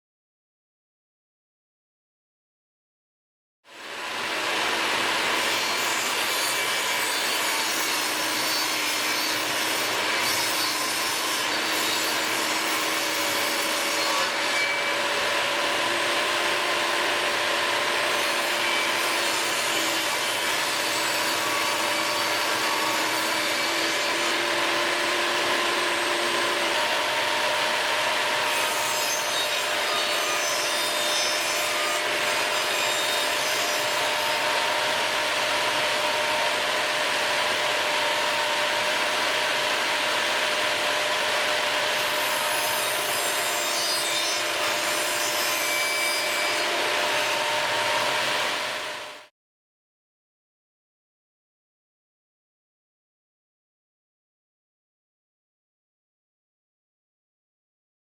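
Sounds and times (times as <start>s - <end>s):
tool rasping wood: 5.4s - 35.9s.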